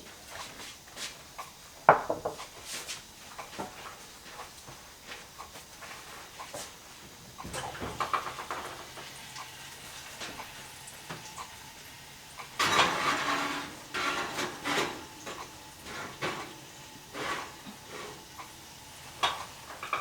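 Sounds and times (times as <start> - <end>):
roasting pan scraping: 12.6 - 18.2.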